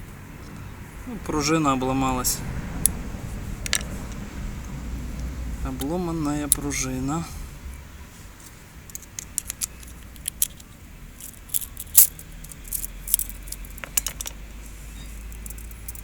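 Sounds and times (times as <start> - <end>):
small metal parts clinking: 8.8 - 16.0.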